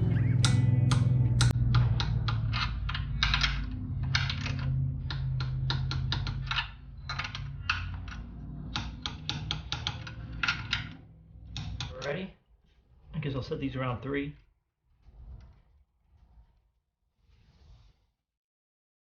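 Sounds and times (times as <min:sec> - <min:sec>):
low steady hum: 0:00.0 - 0:14.2.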